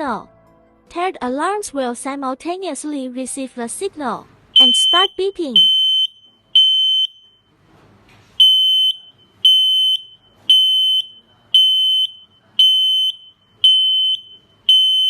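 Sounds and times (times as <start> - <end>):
smoke alarm beeping: 4.6 - 7.5, 8.4 - 15.0.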